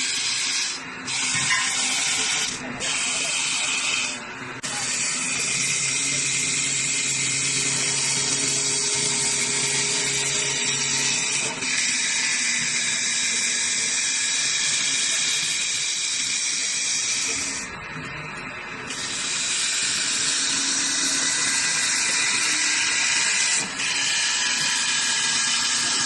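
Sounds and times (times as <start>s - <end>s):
lathe hissing: 0.0s - 17.7s, 18.9s - 26.0s
low machine hum: 17.6s - 26.0s.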